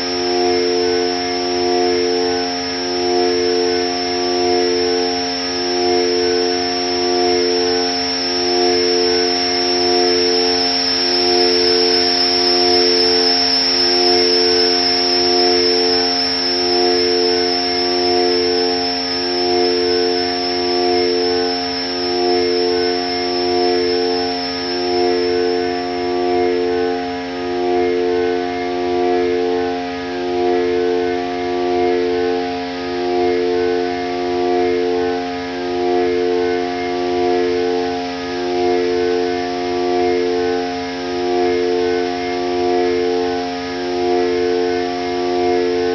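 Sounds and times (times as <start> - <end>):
noisy hiss: 0.0 - 27.0
high whistle-like tone: 0.0 - 45.9
synthesizer drone: 0.0 - 45.9.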